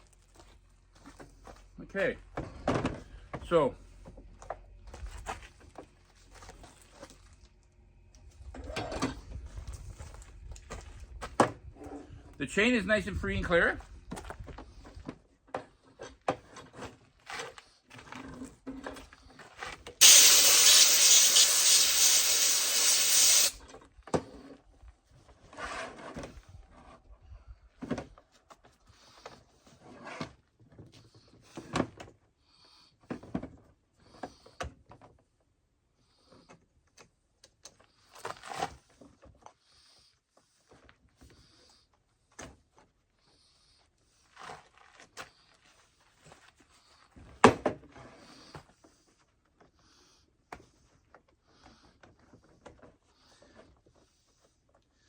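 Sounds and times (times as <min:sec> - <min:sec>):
compressed air blowgun hiss: 0:20.0 - 0:23.6.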